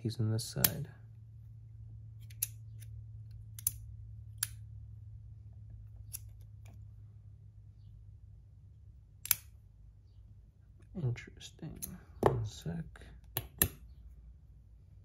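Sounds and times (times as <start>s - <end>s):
faint low hum: 0.0s - 15.0s
metal fidget pieces clicking: 2.2s - 4.6s.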